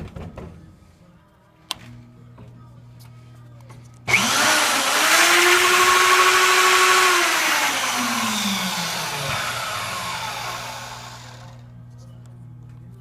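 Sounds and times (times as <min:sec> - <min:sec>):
electric drill drilling steel: 0:04.1 - 0:11.6.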